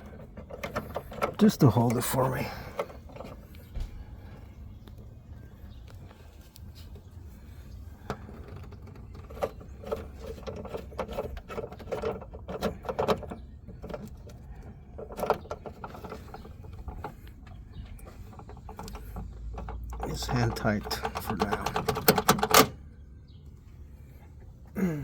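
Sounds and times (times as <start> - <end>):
plastic clicks and rattles: 8.1 - 22.8.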